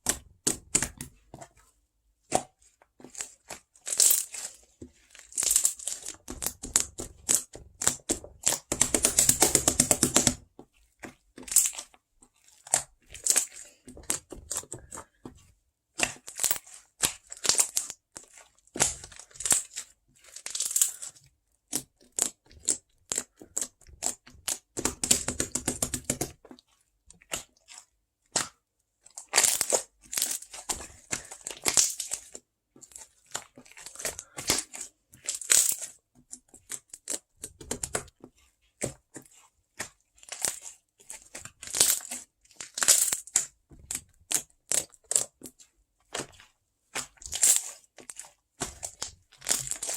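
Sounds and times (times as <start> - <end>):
crisp crackling and crinkling: 11.2 - 15.2, 29.0 - 38.5, 39.3 - 49.9.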